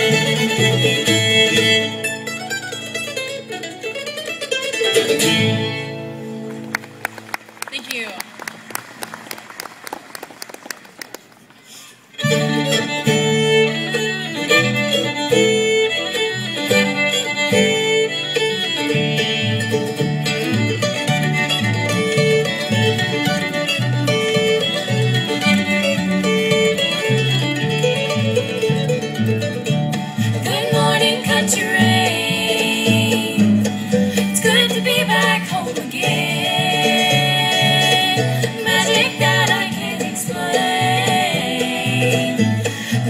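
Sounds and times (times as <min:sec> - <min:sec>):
bluegrass band playing: 0:00.0 - 0:43.0
people clapping: 0:06.4 - 0:11.8.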